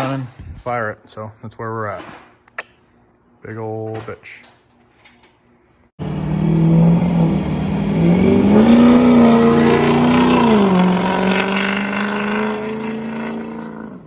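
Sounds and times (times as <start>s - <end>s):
vehicle engine revving: 6.0s - 14.0s.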